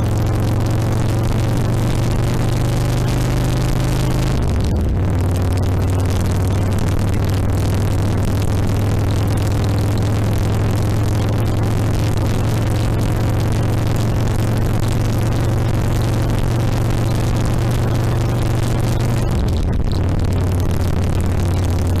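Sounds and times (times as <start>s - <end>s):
motorcycle engine running: 0.0s - 22.0s
road noise: 0.0s - 22.0s.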